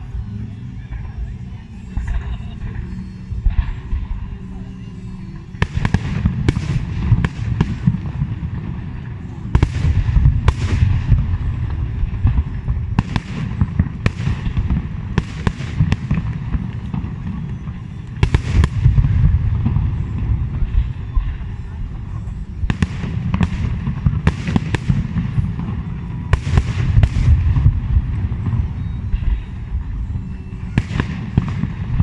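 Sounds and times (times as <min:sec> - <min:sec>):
deep rumble of firework bursts: 0:00.0 - 0:32.0
sharp echoing firework bangs: 0:05.5 - 0:32.0.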